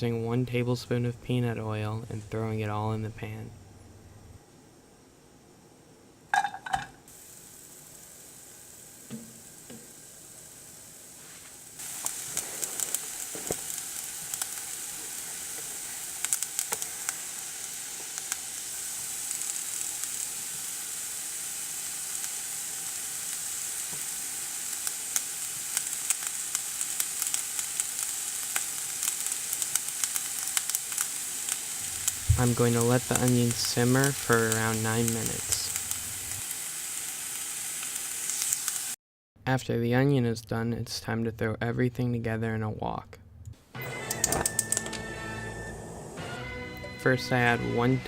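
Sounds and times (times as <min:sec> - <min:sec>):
onion sizzling in oil: 0:07.1 - 0:39.0.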